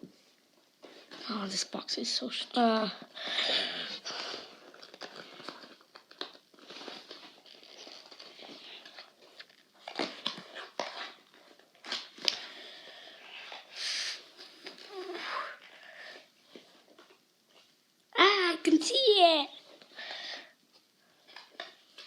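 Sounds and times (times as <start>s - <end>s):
packaging crinkling and tearing: 3.4s - 17.6s.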